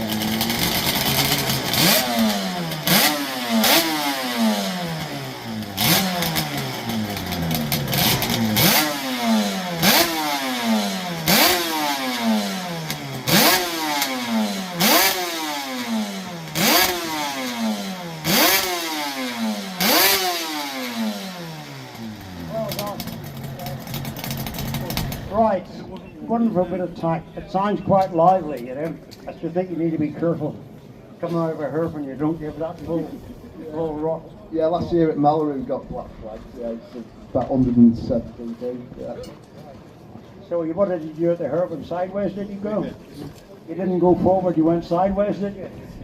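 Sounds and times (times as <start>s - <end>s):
motorcycle engine revving: 0.0s - 26.5s
exhaust cracks: 0.0s - 26.7s.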